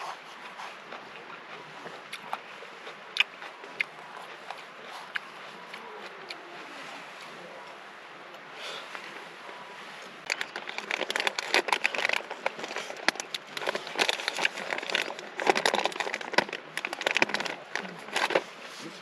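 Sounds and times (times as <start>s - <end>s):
plastic wrapper crinkling: 10.3s - 18.5s.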